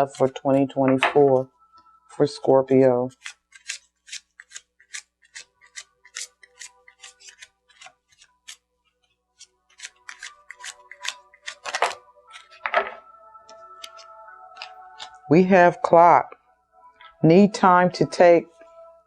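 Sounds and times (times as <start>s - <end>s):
soft background music: 0.0s - 4.2s, 4.8s - 19.0s
cards being shuffled: 3.0s - 13.0s, 13.8s - 15.2s.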